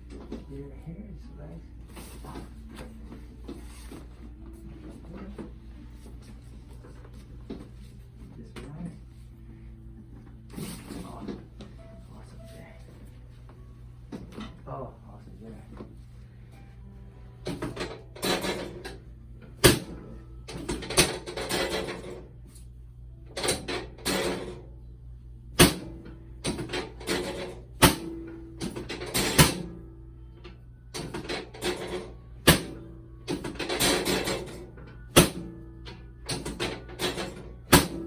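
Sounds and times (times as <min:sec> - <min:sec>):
rustling and shifting: 0:00.0 - 0:24.7
steady low hum: 0:00.0 - 0:38.0.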